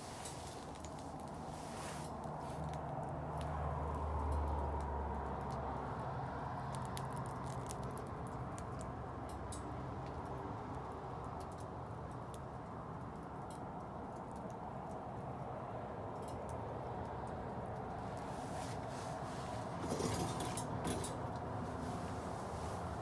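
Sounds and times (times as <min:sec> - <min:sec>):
bonfire hissing: 0:00.0 - 0:02.6, 0:21.1 - 0:23.0
fire crackles and pops: 0:00.0 - 0:13.2.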